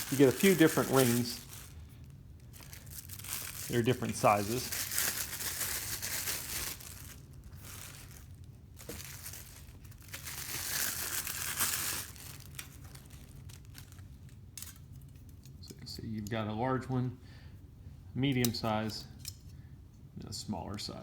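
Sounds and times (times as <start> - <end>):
packaging crinkling: 0.0 - 15.3.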